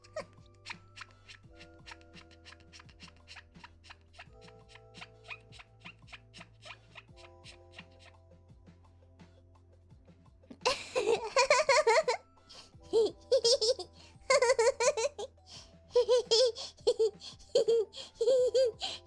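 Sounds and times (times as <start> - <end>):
faint background music: 0.0 - 19.0
woman giggling: 10.5 - 19.0.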